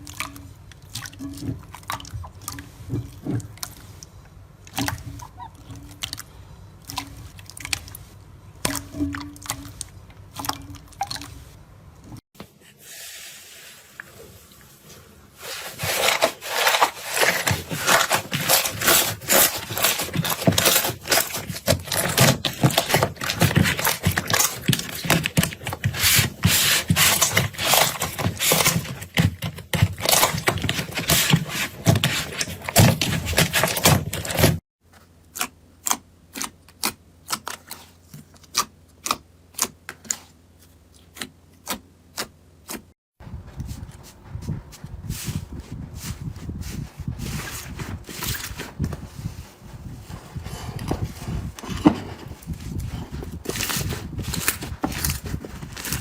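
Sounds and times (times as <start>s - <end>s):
slime squishing: 0.0s - 12.2s, 14.0s - 42.9s, 45.1s - 56.0s.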